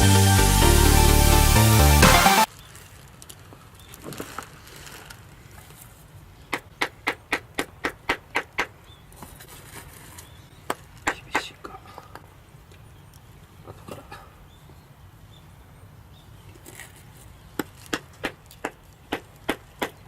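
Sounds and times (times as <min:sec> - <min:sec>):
background music: 0:00.0 - 0:02.5
faint outdoor background: 0:00.0 - 0:20.0.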